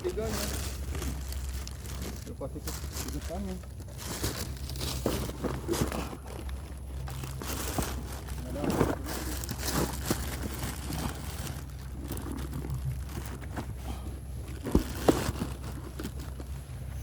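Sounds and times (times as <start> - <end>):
low steady hum: 0.0 - 17.0
rustling and handling: 0.0 - 17.0.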